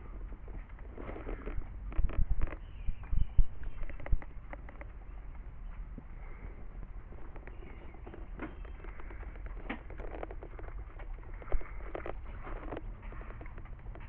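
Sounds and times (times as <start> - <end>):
steady low rumble: 0.0 - 14.0
birds chirping and singing: 2.4 - 10.1.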